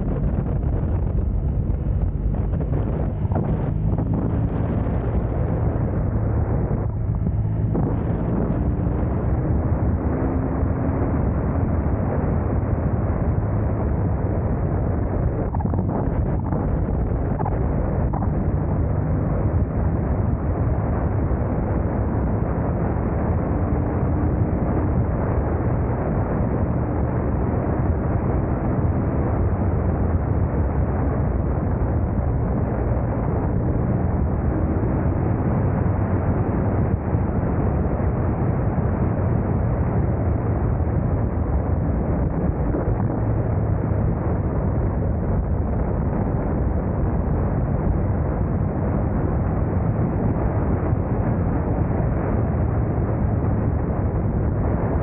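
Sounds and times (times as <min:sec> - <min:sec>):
motorcycle engine: 0:00.0 - 0:09.4
wind buffeting and road noise: 0:00.0 - 0:55.0.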